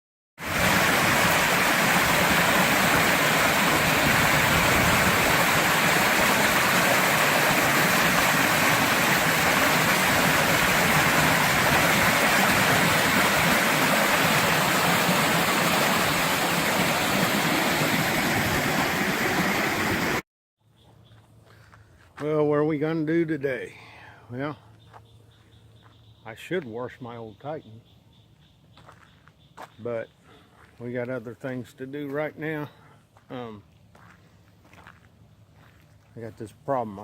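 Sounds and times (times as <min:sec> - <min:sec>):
water rushing: 0:00.4 - 0:20.2.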